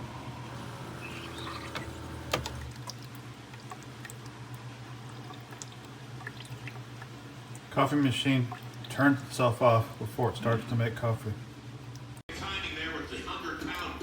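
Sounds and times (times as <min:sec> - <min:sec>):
coffee maker humming: 0:00.0 - 0:03.1
faint liquid sounds: 0:00.5 - 0:12.2.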